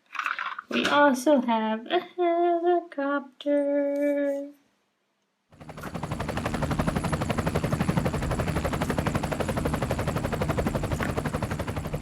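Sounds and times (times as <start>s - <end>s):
helicopter rotor chopping: 5.6s - 12.0s.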